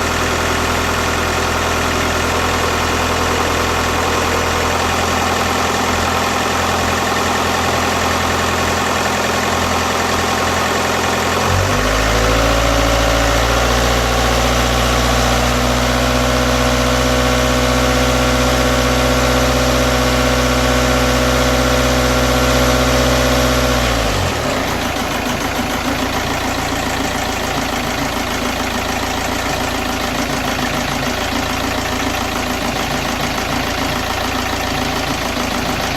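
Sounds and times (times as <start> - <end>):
diesel engine rough idle: 0.0 - 35.9
engine revving up: 11.4 - 25.4.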